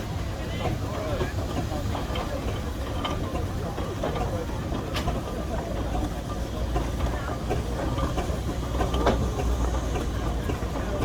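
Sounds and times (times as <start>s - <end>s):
steam engines rumbling: 0.0s - 11.0s.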